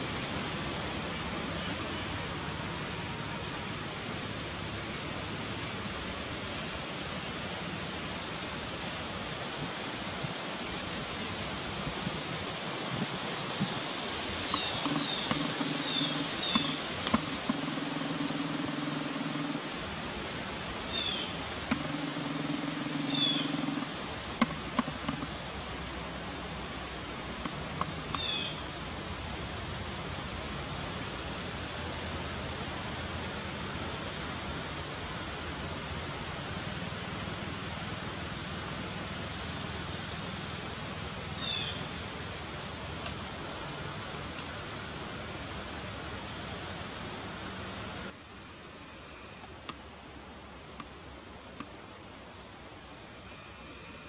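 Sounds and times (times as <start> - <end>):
outdoor hiss: 0.0 - 54.0
small bird chirping: 14.5 - 19.7, 20.9 - 25.3
low hum: 14.6 - 26.2.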